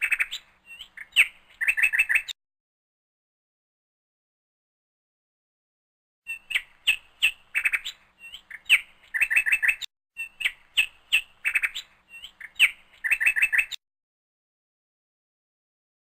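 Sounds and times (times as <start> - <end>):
nightingale singing: 0.0 - 2.4, 6.3 - 13.8.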